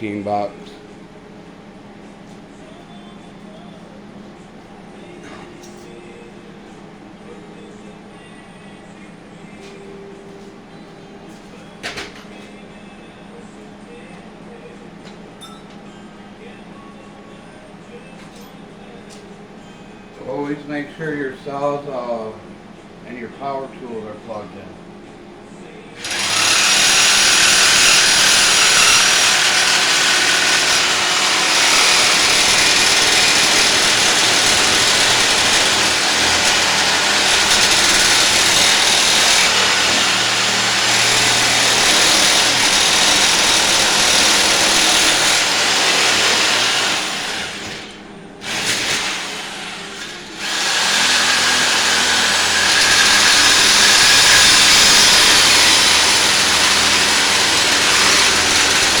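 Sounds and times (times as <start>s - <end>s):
reciprocating saw cutting metal tube: 26.0s - 49.5s, 50.4s - 59.0s.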